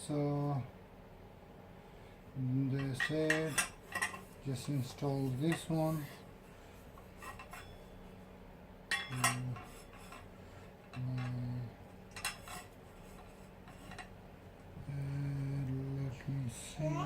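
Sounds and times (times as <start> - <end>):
metal table parts clinking: 2.8 - 4.3, 7.0 - 7.9, 8.9 - 10.3, 12.1 - 14.1
person humming low: 14.8 - 17.0.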